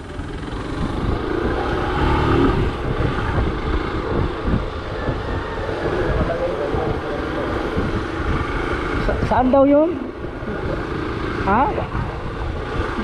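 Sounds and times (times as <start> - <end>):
motorcycle engine running: 0.0 - 13.0
wind rumble on microphone: 0.0 - 13.0.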